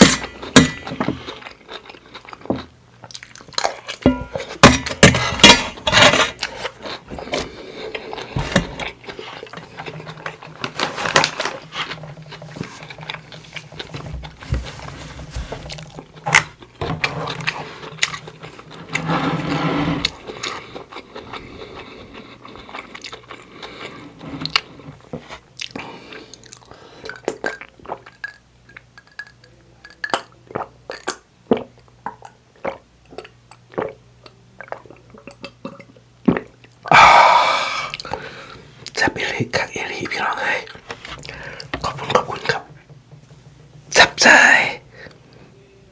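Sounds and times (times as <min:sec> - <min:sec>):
close chewing and biting: 0:00.0 - 0:04.7, 0:06.1 - 0:14.4, 0:15.7 - 0:19.0, 0:20.0 - 0:36.9.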